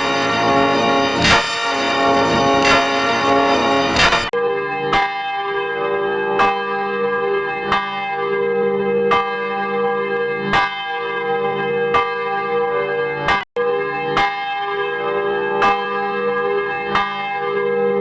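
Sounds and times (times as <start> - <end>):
church bell tolling: 0.0 - 4.3.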